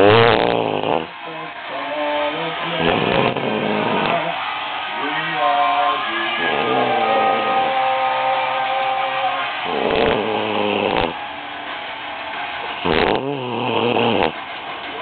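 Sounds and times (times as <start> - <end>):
loud snoring: 0.0 - 4.4, 6.4 - 8.8, 9.5 - 11.2, 12.8 - 14.4.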